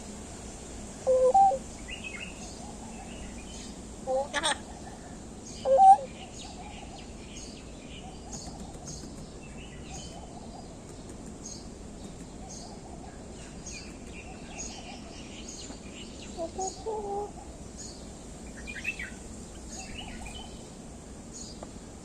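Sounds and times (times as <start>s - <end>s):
steady background hiss: 0.0s - 22.0s
bird chirping: 1.1s - 21.8s.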